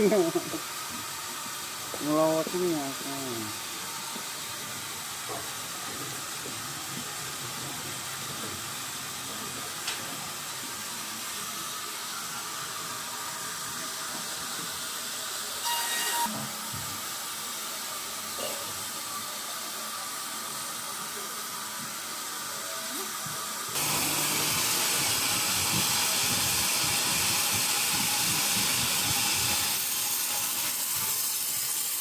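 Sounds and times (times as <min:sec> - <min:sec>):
high whistling squeal: 0:15.6 - 0:16.5
water spray hissing: 0:23.8 - 0:32.0.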